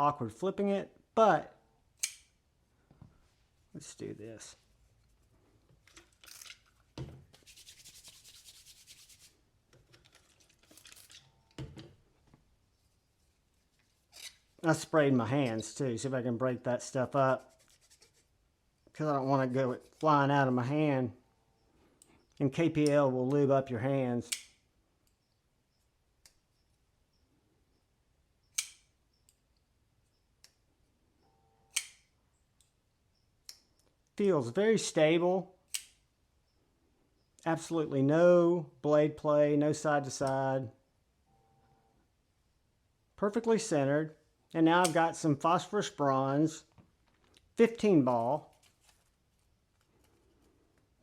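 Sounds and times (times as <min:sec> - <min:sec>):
folding knife snapping open: 0:02.0 - 0:02.3, 0:28.5 - 0:28.8, 0:31.7 - 0:32.0
knife blade clicks: 0:02.0 - 0:02.3, 0:28.5 - 0:28.8.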